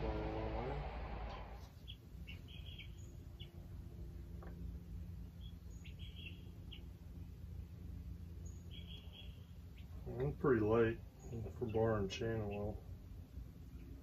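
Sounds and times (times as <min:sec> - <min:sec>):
steady low hum: 0:00.0 - 0:14.0
faint bird chirps: 0:01.8 - 0:03.6, 0:05.2 - 0:12.8.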